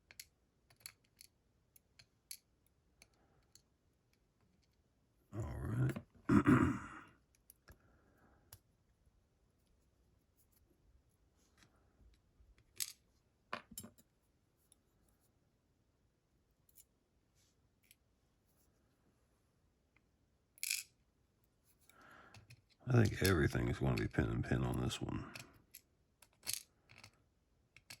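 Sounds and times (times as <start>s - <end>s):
metal lock parts clicking: 25.3s - 27.2s.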